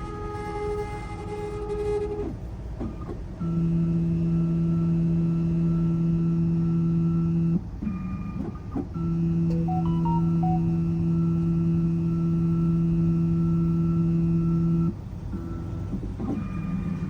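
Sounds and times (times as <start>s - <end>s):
short rising beeps: 9.5s - 10.9s.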